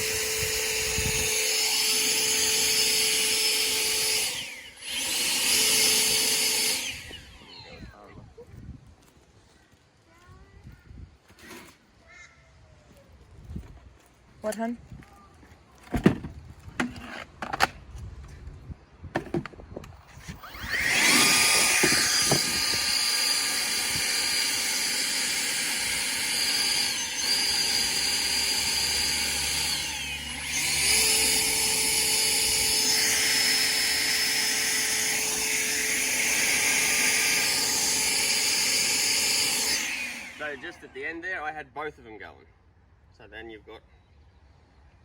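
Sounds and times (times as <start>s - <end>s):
second leaf blower whine: 0.0s - 8.0s, 20.1s - 41.0s
leaf blower whine and air rush: 0.0s - 8.1s, 20.1s - 41.0s.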